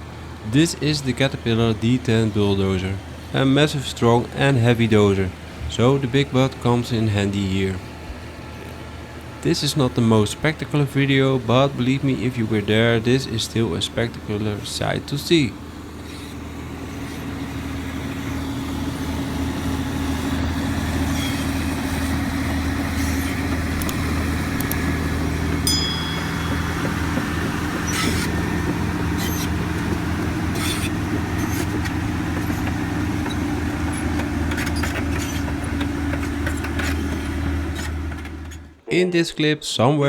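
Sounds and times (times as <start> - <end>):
diesel engine drone: 0.0 - 38.8.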